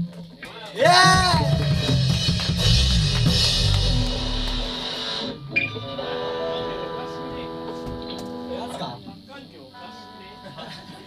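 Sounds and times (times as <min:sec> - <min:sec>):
rock band playing loud burst: 0:00.8 - 0:09.0.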